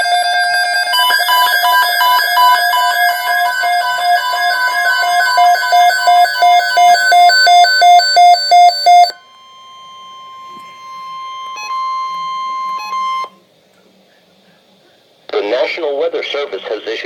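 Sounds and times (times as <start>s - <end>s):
steady alert tone: 0.0s - 9.2s.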